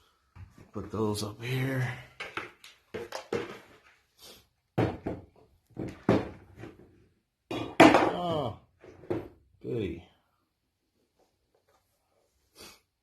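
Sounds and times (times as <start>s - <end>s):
knocks and clatters on hard surface: 2.1s - 3.9s, 4.7s - 9.4s.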